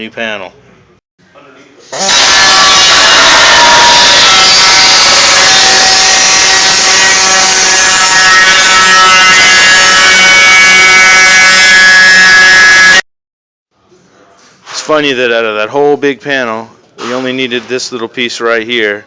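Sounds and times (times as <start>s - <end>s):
grinder whining on metal: 2.0s - 13.0s.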